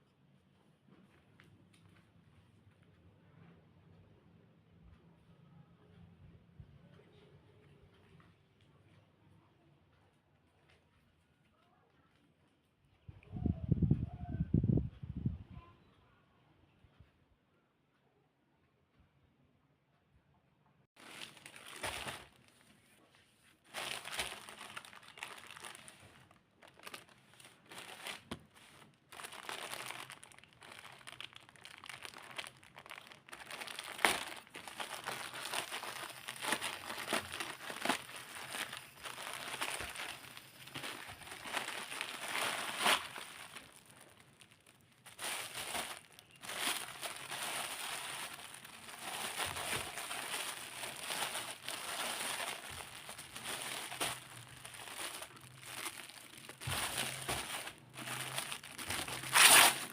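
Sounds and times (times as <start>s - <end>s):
packaging crinkling: 21.0s - 22.7s, 23.7s - 59.9s.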